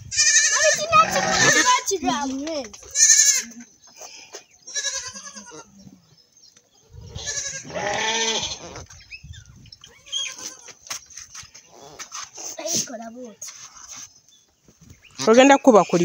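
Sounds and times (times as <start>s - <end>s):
goats bleating: 0.1s - 1.9s, 2.9s - 3.7s, 4.7s - 5.8s, 7.1s - 8.9s, 9.9s - 10.8s.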